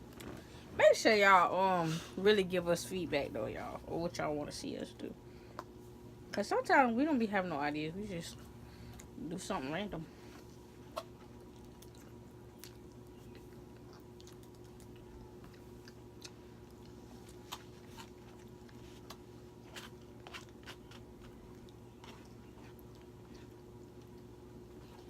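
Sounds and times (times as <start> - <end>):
chewing mouth clicks and smacks: 10.9 - 25.0.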